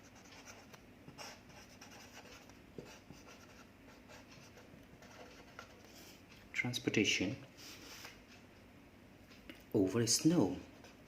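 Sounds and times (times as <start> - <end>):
faint scratching of handwriting: 0.0 - 6.4.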